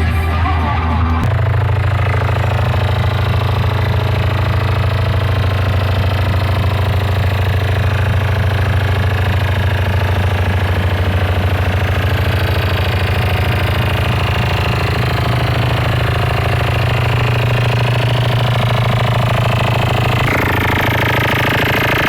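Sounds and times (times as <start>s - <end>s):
heavy distorted bass music: 0.0s - 22.0s.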